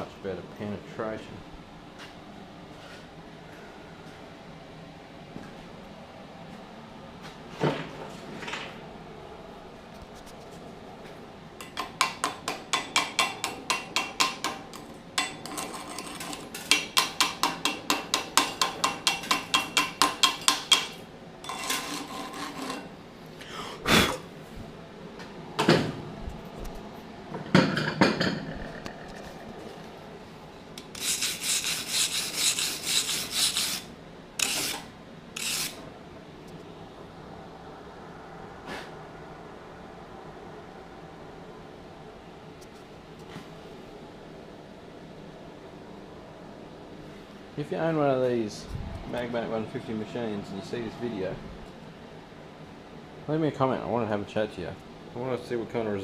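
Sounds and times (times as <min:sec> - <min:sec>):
scraping on steel plate: 0:15.2 - 0:17.4, 0:18.1 - 0:22.9, 0:30.8 - 0:35.8.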